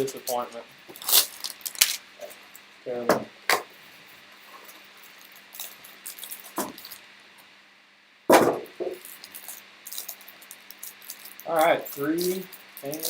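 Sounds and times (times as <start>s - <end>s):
cards and packaging rustling: 0.0s - 2.7s, 3.7s - 7.0s, 8.9s - 13.0s
loud thump: 8.3s - 9.0s.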